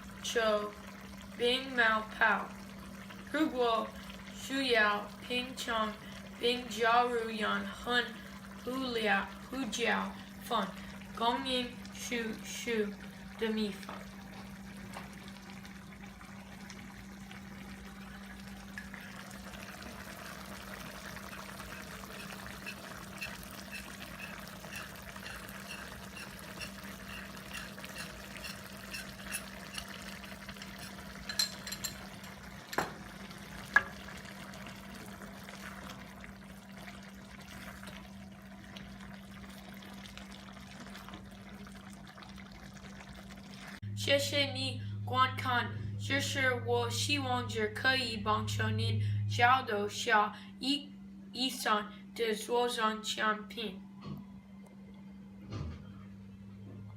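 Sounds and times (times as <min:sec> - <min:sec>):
liquid cooking in a pan: 0:00.0 - 0:43.9
low hum: 0:43.8 - 0:52.0, 0:53.6 - 0:56.9.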